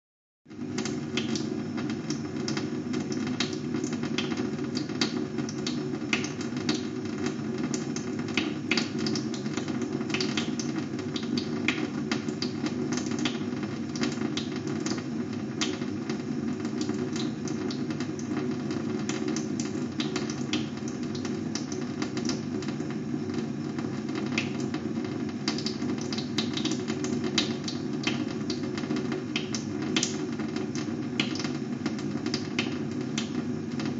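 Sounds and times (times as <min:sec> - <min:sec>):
water tap running: 0:00.5 - 0:33.9.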